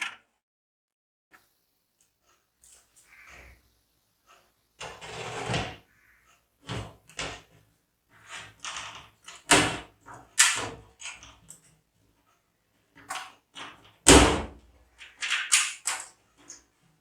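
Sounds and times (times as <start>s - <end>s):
scraping rustle: 4.8s - 5.8s.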